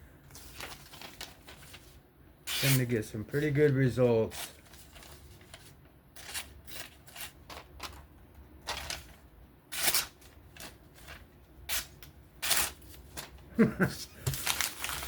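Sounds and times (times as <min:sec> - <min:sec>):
knife slicing paper: 0:02.5 - 0:03.0, 0:09.7 - 0:13.0.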